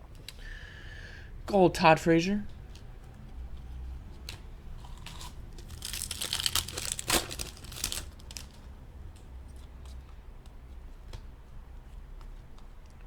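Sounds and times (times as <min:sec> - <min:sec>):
cards being handled: 0:03.5 - 0:11.2
wrapper tearing and crinkling: 0:04.8 - 0:08.7.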